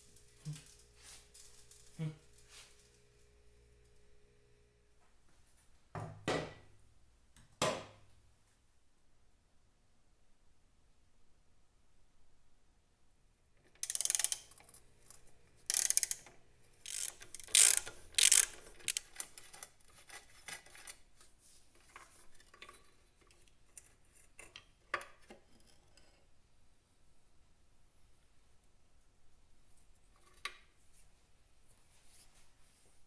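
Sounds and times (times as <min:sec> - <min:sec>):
metal scraping or ratcheting: 0:13.8 - 0:20.9
tool clicks and handling: 0:15.7 - 0:16.3, 0:16.9 - 0:21.0.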